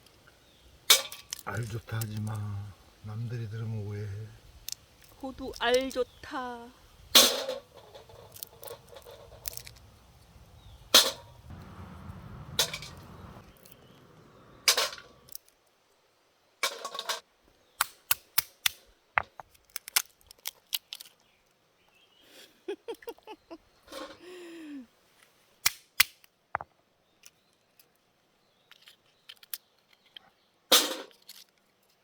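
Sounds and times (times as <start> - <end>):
walnuts cracking: 7.2 - 11.8, 17.8 - 21.3.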